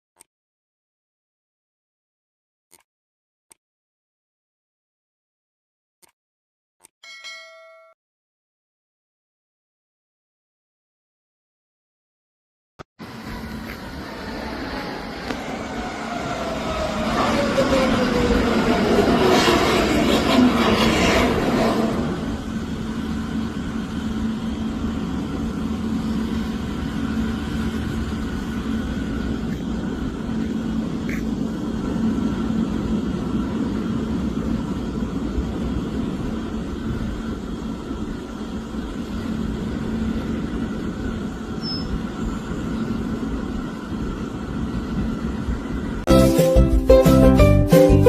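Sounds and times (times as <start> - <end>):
engine rumble with low hum: 13.0 - 46.0.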